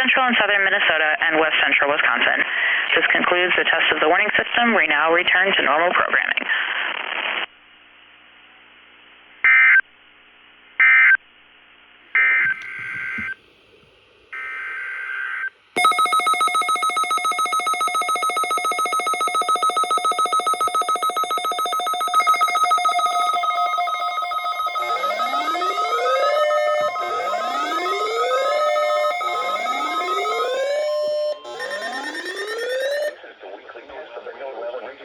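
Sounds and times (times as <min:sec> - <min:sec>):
digital data bursts: 0:15.8 - 0:33.2
pulsing electronic tones: 0:15.8 - 0:33.2.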